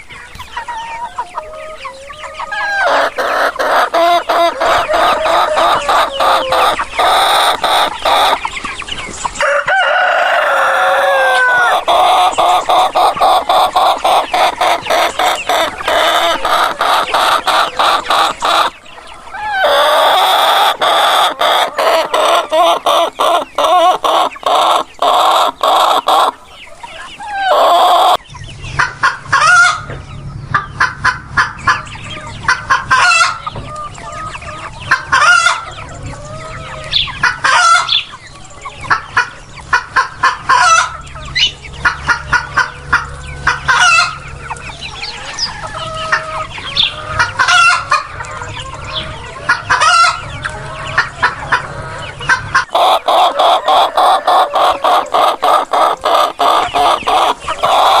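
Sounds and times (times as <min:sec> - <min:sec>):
chickens clucking rapidly: 0:00.0 - 0:58.0
rooster crowing: 0:01.9 - 0:06.8, 0:09.4 - 0:11.9, 0:19.2 - 0:22.8, 0:52.8 - 0:56.4.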